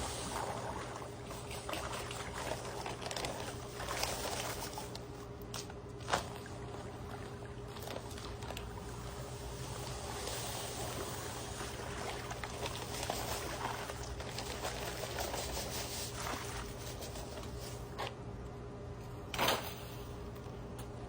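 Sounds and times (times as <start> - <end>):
water sloshing and trickling: 0.0 - 18.2.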